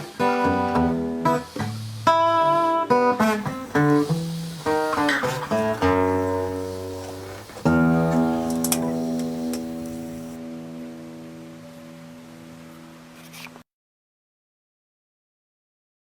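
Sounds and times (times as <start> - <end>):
blues acoustic guitar: 0.2 - 10.5.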